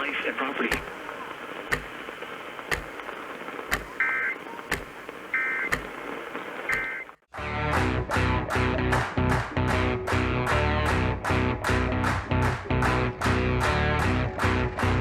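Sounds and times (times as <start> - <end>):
receiver hiss: 0.0 - 7.3
sharp tick: 0.6 - 1.0, 1.6 - 4.0, 4.7 - 7.1
short digital data bursts: 1.0 - 7.2
guitar music: 7.4 - 15.0.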